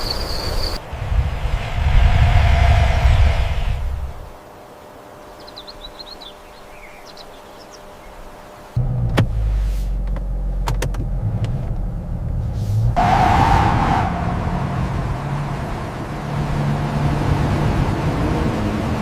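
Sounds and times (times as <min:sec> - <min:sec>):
car engine rumbling: 0:00.0 - 0:04.4, 0:07.4 - 0:19.0
rushing surge: 0:00.8 - 0:04.4.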